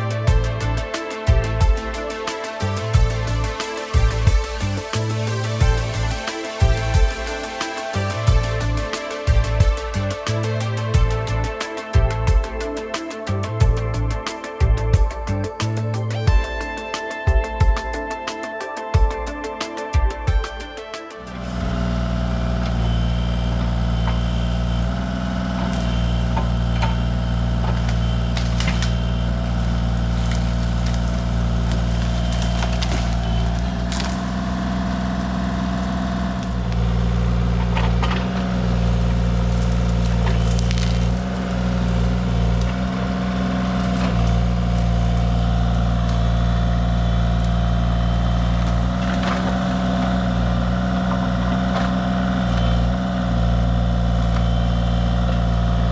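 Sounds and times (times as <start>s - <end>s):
excavator diesel engine running: 0.0s - 18.2s.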